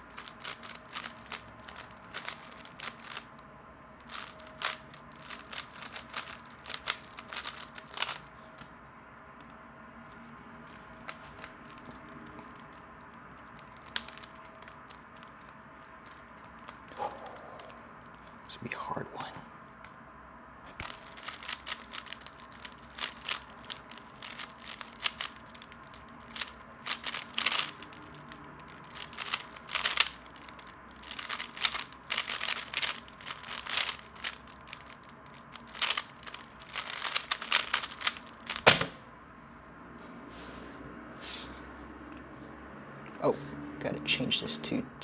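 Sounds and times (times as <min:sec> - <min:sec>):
plastic puzzle cube clicking: 0:00.0 - 0:03.4, 0:04.0 - 0:08.7, 0:10.7 - 0:18.5, 0:20.8 - 0:39.0.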